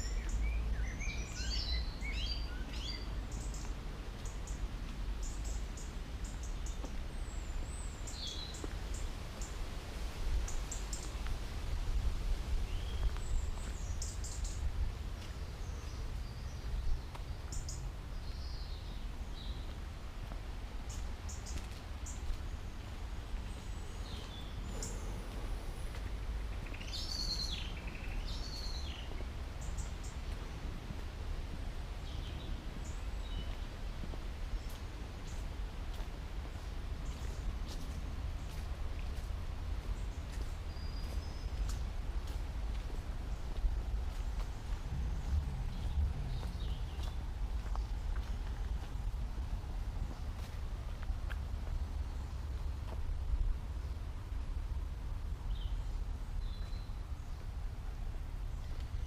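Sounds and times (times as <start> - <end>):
wild birds chirping: 0.0 - 9.6, 12.6 - 19.8, 20.8 - 30.9, 39.5 - 50.4
steady low rumble: 2.9 - 59.0.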